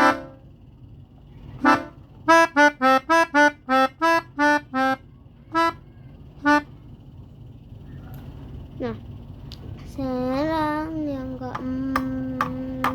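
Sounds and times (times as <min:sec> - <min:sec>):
melodica playing short notes: 0:00.0 - 0:00.4.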